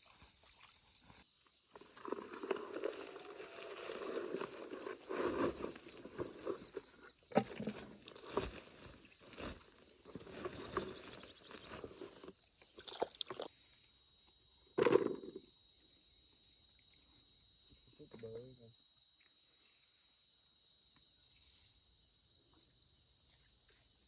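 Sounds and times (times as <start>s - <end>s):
insect chirping trill: 0.0s - 24.0s
rustling and knocking: 1.8s - 12.3s.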